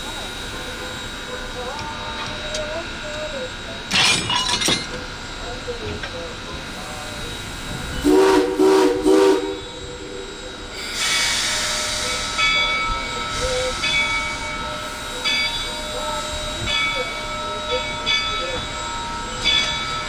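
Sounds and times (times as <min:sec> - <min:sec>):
train running noise: 0:00.0 - 0:20.0
steady steam hiss: 0:05.1 - 0:20.0
steam locomotive whistle toots: 0:07.0 - 0:20.0.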